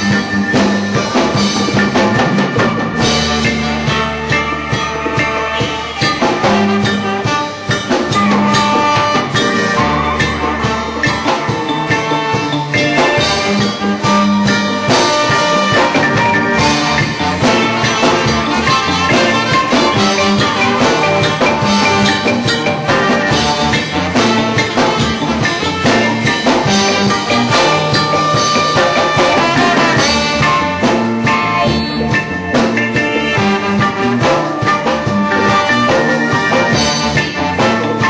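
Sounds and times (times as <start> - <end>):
bass guitar notes: 0.0 - 38.0
drums: 0.0 - 38.0
reggae band playing live: 0.0 - 38.0.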